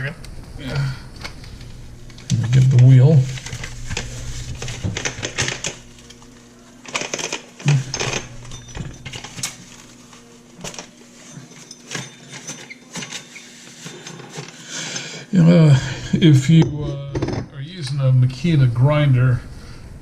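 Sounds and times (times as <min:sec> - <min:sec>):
metal parts clicking and clunking: 0:03.4 - 0:06.2, 0:06.8 - 0:09.6.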